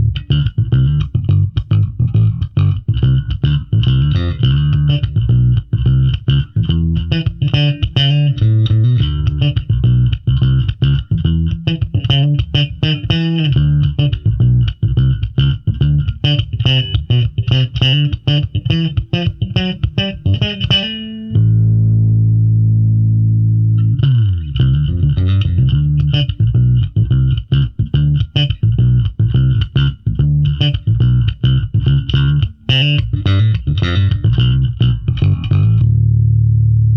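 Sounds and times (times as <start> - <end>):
electric bass fast runs: 21.4 - 24.2, 35.6 - 36.9.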